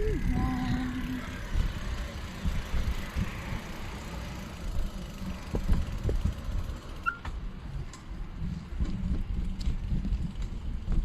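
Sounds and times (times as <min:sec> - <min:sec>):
car engine rumble inside cabin: 0:00.0 - 0:01.8.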